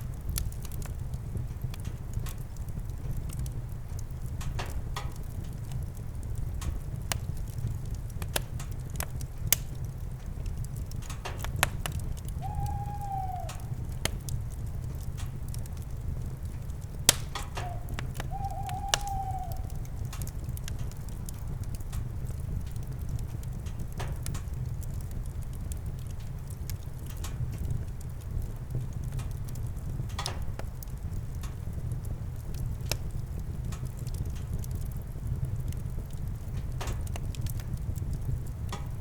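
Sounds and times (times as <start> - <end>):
campfire crackling and popping: 0.0 - 39.0
owl hooting: 12.4 - 13.8, 17.4 - 20.1.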